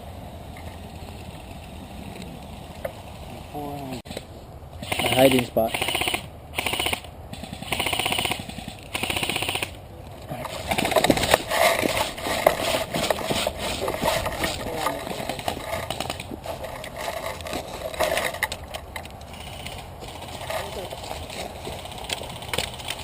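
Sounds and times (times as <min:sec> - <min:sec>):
airsoft gun firing bursts: 0:04.8 - 0:09.8
rustling: 0:10.0 - 0:23.0
scattered clicks: 0:21.7 - 0:23.0.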